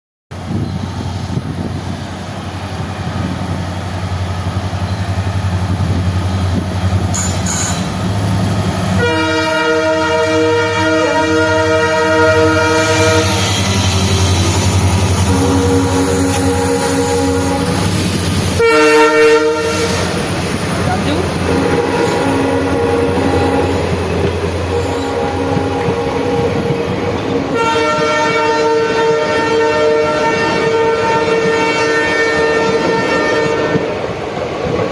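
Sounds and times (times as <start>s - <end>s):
diesel locomotive engine drone: 0.3s - 34.9s
locomotive horn blast: 9.0s - 20.2s, 21.0s - 26.7s, 27.4s - 34.0s.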